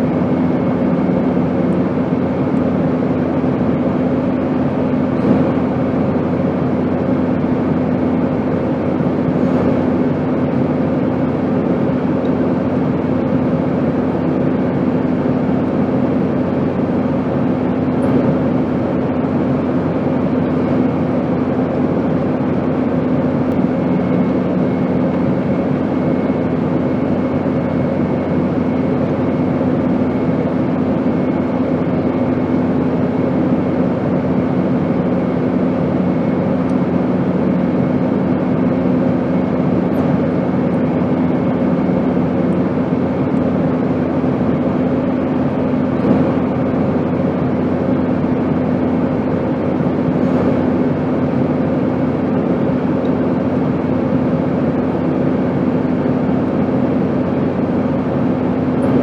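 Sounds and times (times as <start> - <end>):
airplane cabin rushing noise: 0.0 - 59.0
low engine hum: 0.0 - 59.0.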